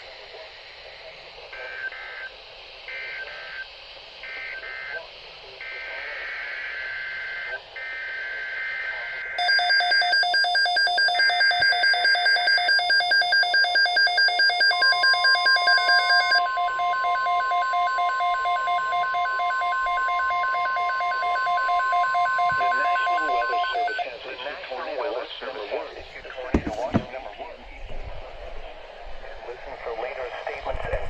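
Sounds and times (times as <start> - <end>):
long steady alarm tone: 1.6 - 24.1.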